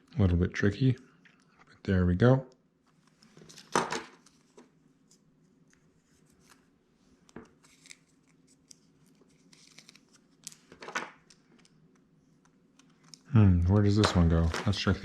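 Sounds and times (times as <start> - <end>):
stickers peeling and clicking: 7.5 - 15.0.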